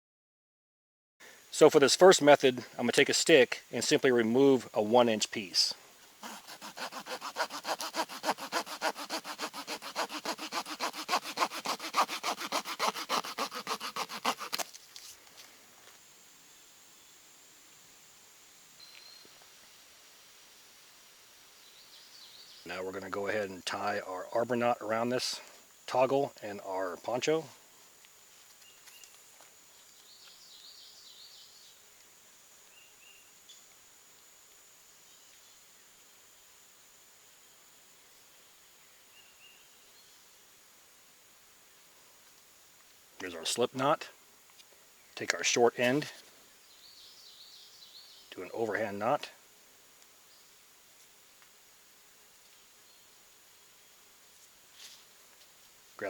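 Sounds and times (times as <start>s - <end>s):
hand saw cutting wood: 6.2s - 14.7s.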